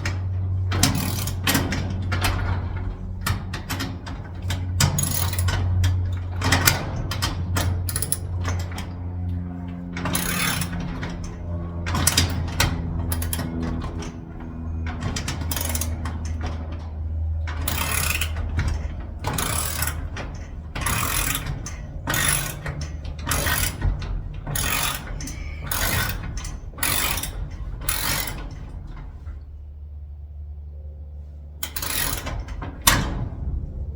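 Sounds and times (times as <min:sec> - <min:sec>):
low hum: 0:00.0 - 0:33.9
hand tool mechanical strokes: 0:10.2 - 0:10.8, 0:13.1 - 0:13.5, 0:15.5 - 0:16.0, 0:17.7 - 0:18.4, 0:19.4 - 0:20.0, 0:22.1 - 0:23.8, 0:24.5 - 0:28.4, 0:31.6 - 0:32.3.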